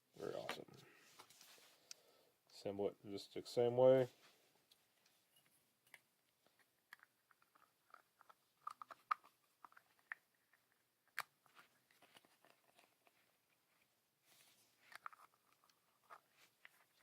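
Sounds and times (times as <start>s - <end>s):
plastic pieces clicking and tapping: 6.6s - 11.4s.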